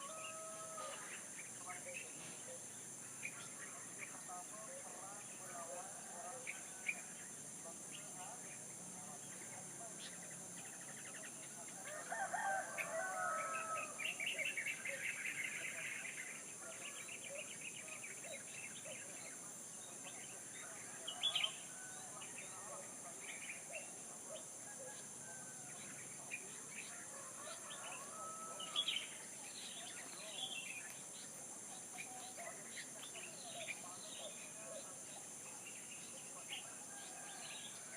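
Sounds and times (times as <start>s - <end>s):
rooster crowing: 0.0s - 1.1s, 11.9s - 14.0s, 26.9s - 28.9s
small birds chirping: 0.0s - 12.0s, 12.8s - 37.9s
steady high hiss: 12.8s - 37.9s.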